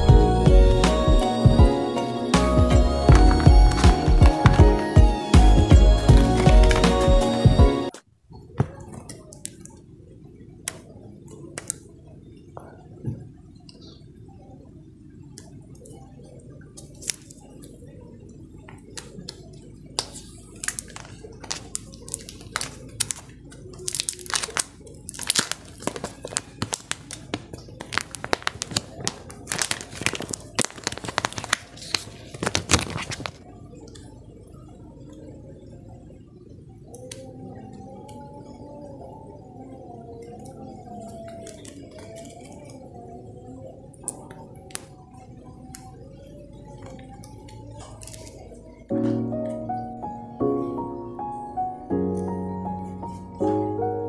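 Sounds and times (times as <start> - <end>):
plastic and paper crinkling: 3.1 - 4.8, 6.0 - 7.1, 20.0 - 33.5, 41.2 - 42.8, 47.8 - 48.6.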